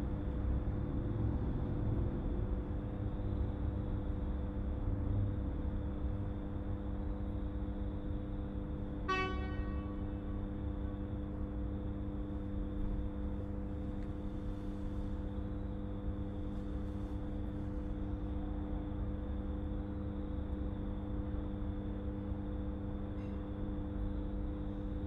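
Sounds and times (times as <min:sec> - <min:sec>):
steady low hum: 0:00.0 - 0:25.0
short ringing tone: 0:09.1 - 0:10.2.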